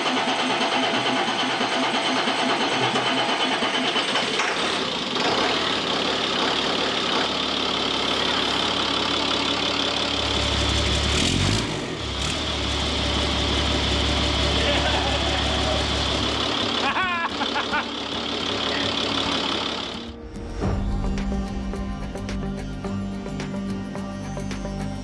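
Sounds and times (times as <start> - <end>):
engine running: 0.0 - 25.0
deep rumble: 20.1 - 23.6.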